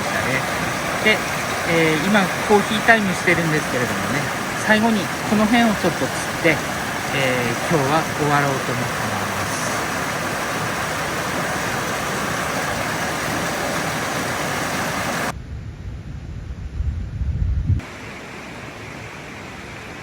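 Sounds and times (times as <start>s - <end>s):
stream water rushing: 0.0s - 15.4s, 17.8s - 20.0s
wind rumble on microphone: 14.6s - 17.8s.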